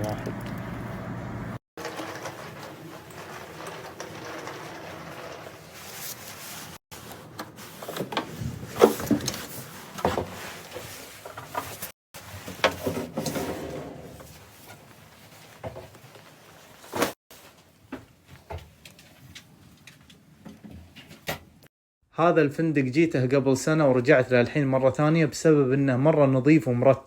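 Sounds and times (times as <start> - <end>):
knocks and clunks of handling: 7.3 - 13.6.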